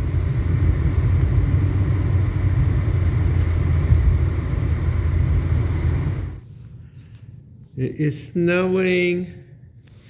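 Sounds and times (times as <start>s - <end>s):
low rumble: 0.0s - 6.4s.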